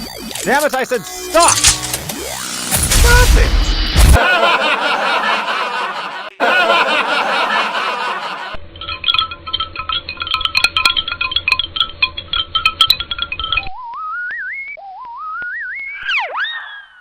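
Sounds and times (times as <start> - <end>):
tinkling chime jingle: 8.7 - 13.7
warbling cartoon sound: 13.8 - 17.0.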